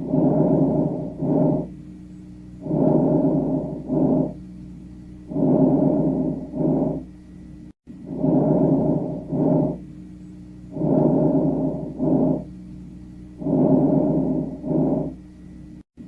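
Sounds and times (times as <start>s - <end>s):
breath sounds through stethoscope: 0.0s - 1.7s, 2.6s - 4.4s, 5.3s - 7.1s, 8.0s - 9.8s, 10.7s - 12.5s, 13.4s - 15.2s.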